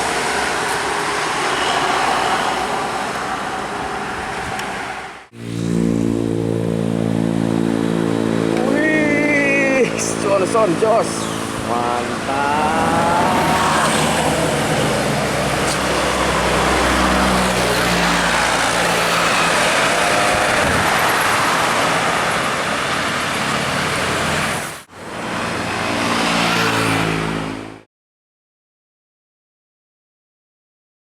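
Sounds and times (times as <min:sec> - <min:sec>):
bus passing at speed: 0:00.0 - 0:27.9
vehicle passing: 0:00.0 - 0:27.9.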